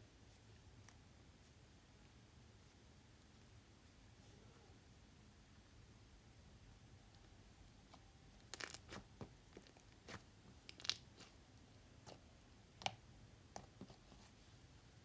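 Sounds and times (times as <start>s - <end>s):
slime crackling and popping: 8.4s - 11.3s.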